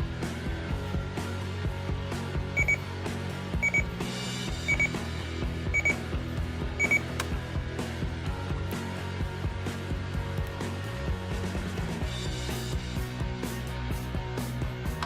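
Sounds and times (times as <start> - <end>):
background music: 0.0 - 15.0
alarm clock beeping: 2.6 - 2.8, 3.6 - 3.9, 4.7 - 5.0, 5.7 - 6.0, 6.8 - 7.0
click: 6.8 - 7.4.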